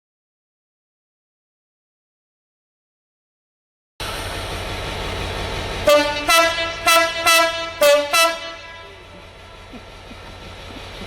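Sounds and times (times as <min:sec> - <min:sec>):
low rumble: 0:04.0 - 0:10.8
train horn blasts: 0:05.8 - 0:09.2.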